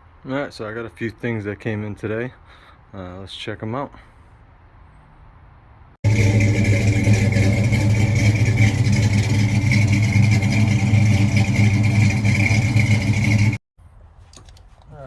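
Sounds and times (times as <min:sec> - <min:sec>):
vehicle engine running loudly: 0:06.0 - 0:13.6.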